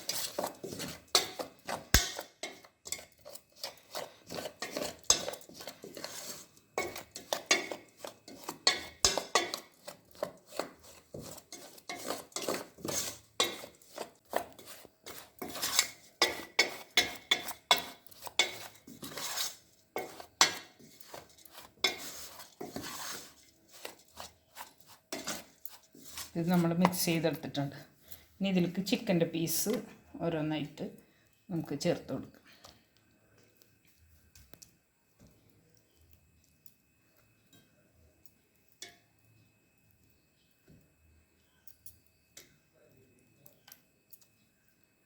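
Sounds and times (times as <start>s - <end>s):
spoon clinking and scraping a bowl: 0.0s - 27.2s.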